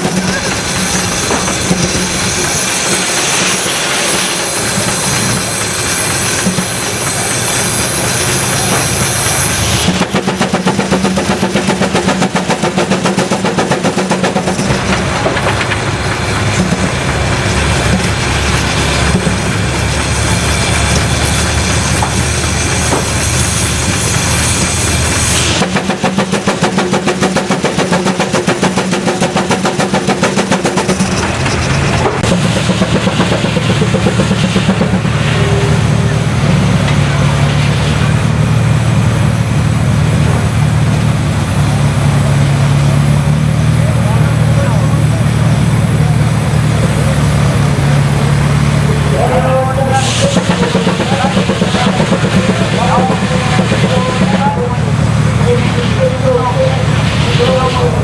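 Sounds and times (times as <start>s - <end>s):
steam engine exhaust chuffing: 0.0s - 58.0s.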